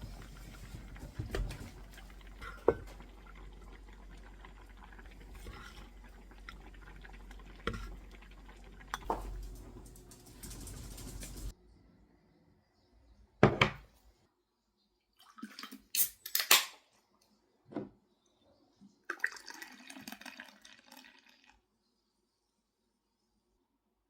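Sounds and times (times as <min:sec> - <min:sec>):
dishes and utensils clattering: 0:00.0 - 0:03.1, 0:08.9 - 0:11.5
water running: 0:00.0 - 0:11.6, 0:19.1 - 0:21.5.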